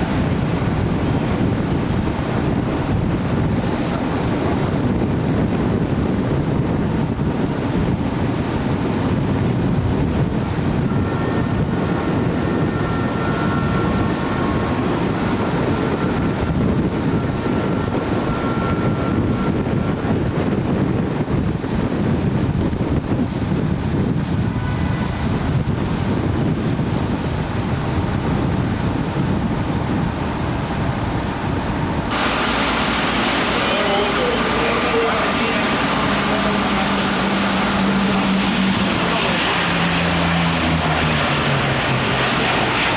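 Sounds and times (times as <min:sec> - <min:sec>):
wind buffeting microphone: 0:00.0 - 0:42.9
heavy rain: 0:29.3 - 0:42.9.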